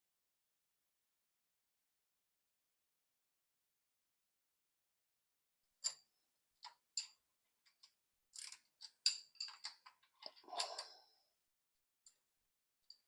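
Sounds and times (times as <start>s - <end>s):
metal scrape: 10.2s - 11.1s.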